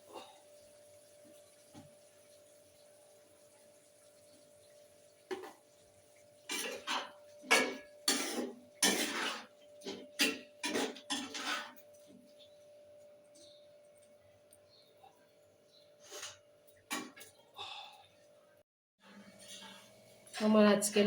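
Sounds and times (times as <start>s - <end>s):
metal spoon scraping a pan: 6.4s - 12.1s, 19.4s - 19.9s.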